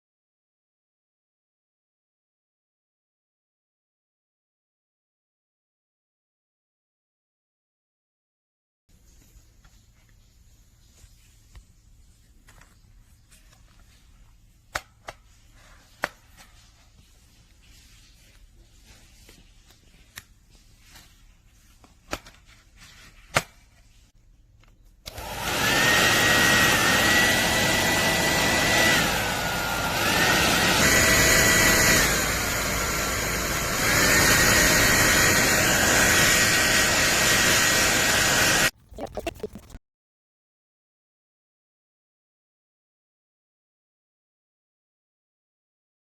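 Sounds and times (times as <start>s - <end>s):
hair dryer whining: 25.1s - 38.7s.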